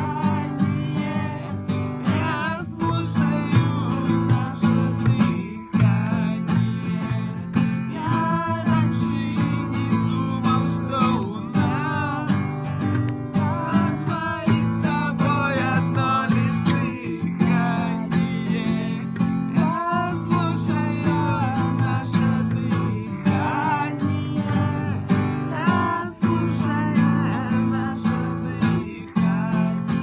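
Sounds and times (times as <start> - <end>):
person singing: 0.0 - 30.0
strummed acoustic guitar: 0.0 - 30.0.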